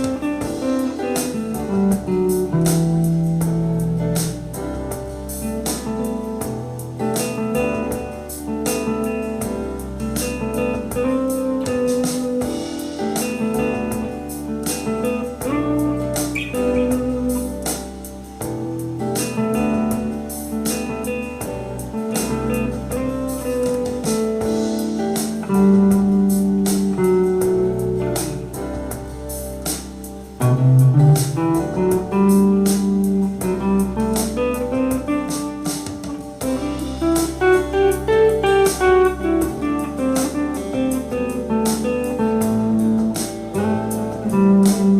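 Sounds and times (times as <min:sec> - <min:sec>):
backing track with drum beat: 0:00.0 - 0:44.9
electric guitar lead: 0:00.0 - 0:44.9.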